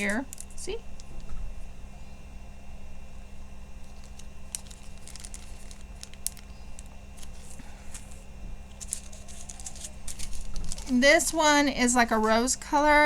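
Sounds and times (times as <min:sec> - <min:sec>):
plastic bags crinkling: 0:00.0 - 0:01.3, 0:03.8 - 0:12.4
steady low hum: 0:00.0 - 0:13.0.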